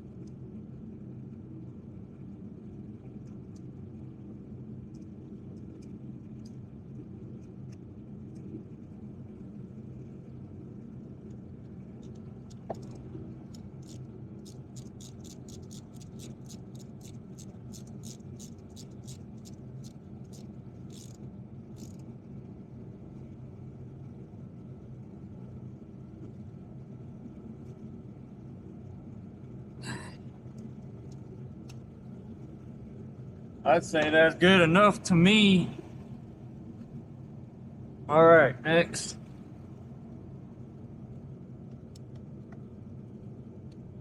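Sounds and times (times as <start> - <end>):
steady low rumble: 0.0 - 44.0
ratchet wrench clicking: 14.7 - 19.5, 20.3 - 21.2, 21.8 - 22.0.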